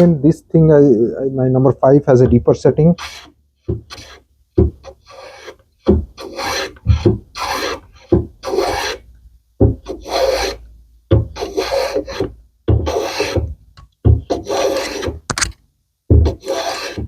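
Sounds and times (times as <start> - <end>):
hand plane shaving wood: 3.0 - 3.3, 3.9 - 4.2, 4.8 - 9.0, 9.8 - 10.6, 11.4 - 13.5, 14.2 - 15.2, 16.2 - 17.0.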